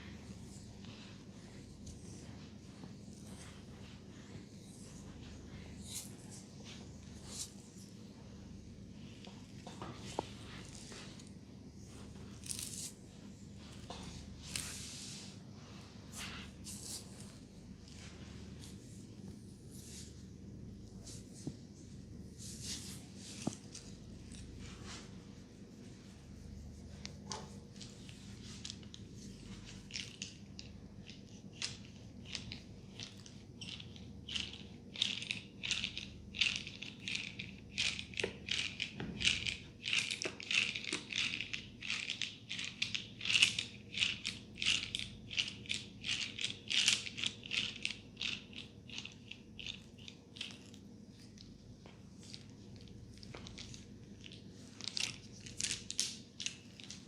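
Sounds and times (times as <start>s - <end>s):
hair and scalp being rubbed: 0.0s - 8.2s, 9.0s - 20.3s, 20.9s - 29.9s.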